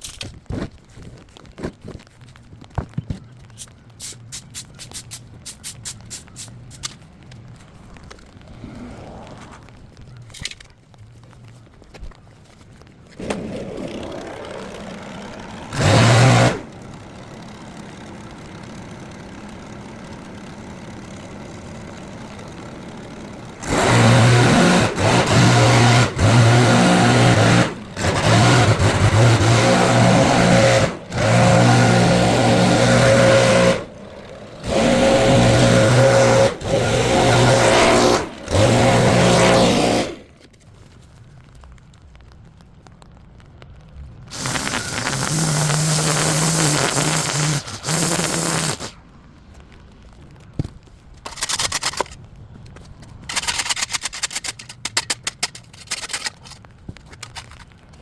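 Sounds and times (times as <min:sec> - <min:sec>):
small petrol engine revving: 0:07.8 - 0:09.8, 0:13.1 - 0:40.4, 0:44.3 - 0:49.0.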